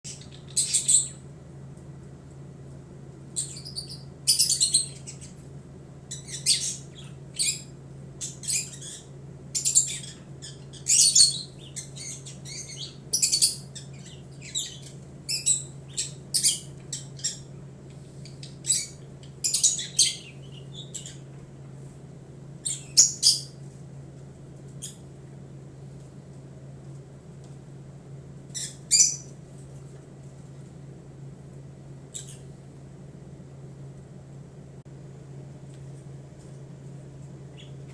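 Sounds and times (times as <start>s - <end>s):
budgerigars chirping: 0.1s - 1.2s, 3.4s - 5.4s, 6.1s - 17.5s, 18.2s - 21.2s, 22.6s - 23.6s, 28.6s - 29.3s
steady low hum: 0.1s - 37.9s.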